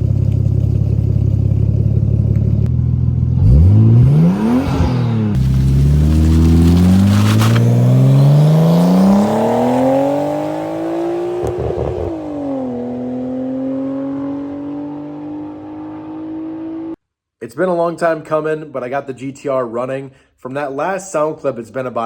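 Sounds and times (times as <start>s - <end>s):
car engine accelerating: 0.0s - 17.0s.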